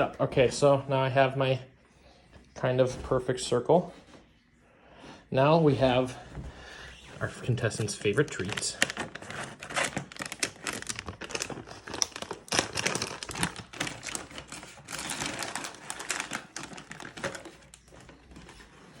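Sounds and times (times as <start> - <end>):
plastic bag crinkling: 7.5 - 19.0.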